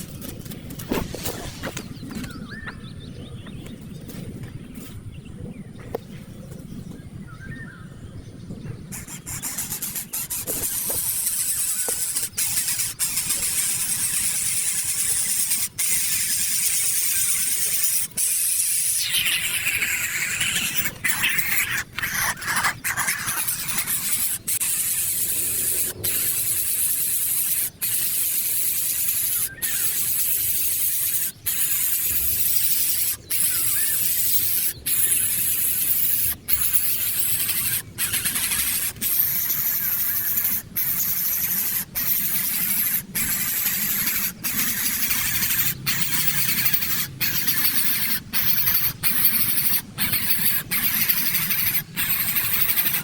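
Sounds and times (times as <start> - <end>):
baby bird screeching begging call: 32.5 - 53.0.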